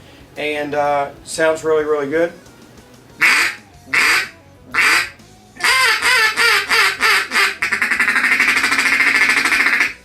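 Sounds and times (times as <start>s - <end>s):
duck call quacking: 3.2s - 10.0s.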